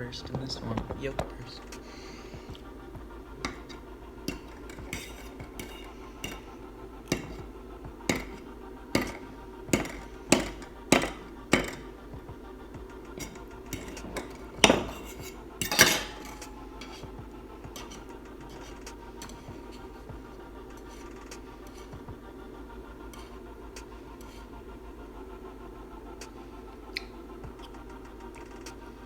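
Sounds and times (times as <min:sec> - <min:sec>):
cutlery clinking on a dish: 0:03.4 - 0:07.4, 0:08.1 - 0:09.2, 0:09.8 - 0:11.8, 0:13.1 - 0:17.1, 0:17.7 - 0:19.5.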